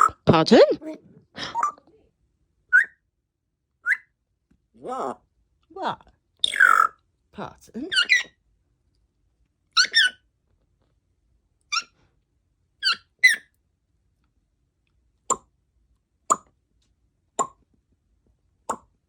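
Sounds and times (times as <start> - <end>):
parrot chirps: 2.7 - 3.0, 3.8 - 4.1, 6.4 - 7.0, 7.9 - 8.4, 9.8 - 10.2, 11.7 - 12.0, 12.8 - 13.5.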